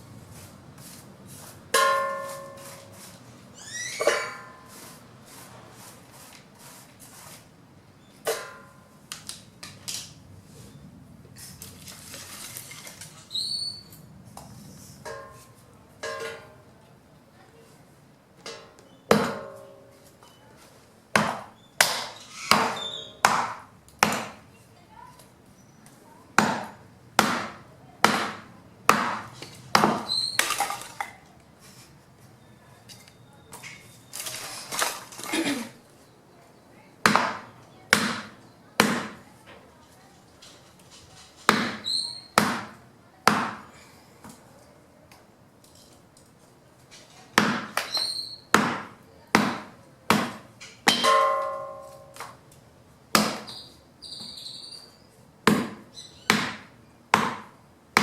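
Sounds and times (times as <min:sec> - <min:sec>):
axe chopping wood: 0:19.1 - 0:19.6, 0:21.1 - 0:24.4, 0:26.4 - 0:30.8, 0:37.0 - 0:39.2, 0:41.5 - 0:43.7, 0:47.4 - 0:52.3, 0:53.2 - 0:53.5, 0:55.4 - 0:58.0.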